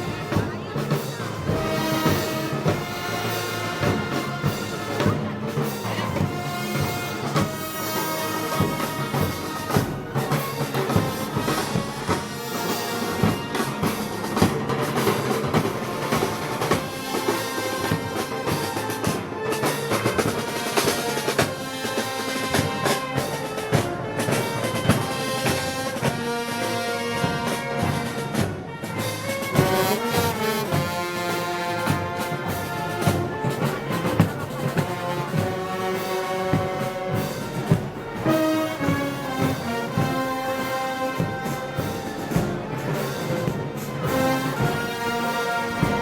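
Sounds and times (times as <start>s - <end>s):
brass band playing: 0.0s - 46.0s
bass drum and snare beat: 29.4s - 46.0s.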